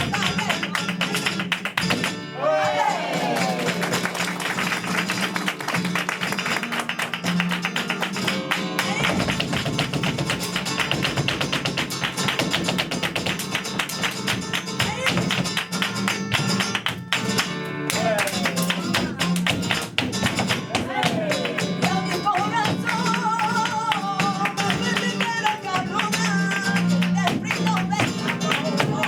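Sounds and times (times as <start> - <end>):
flamenco guitar: 0.0 - 29.0
dancers' footwork taps: 6.2 - 29.0.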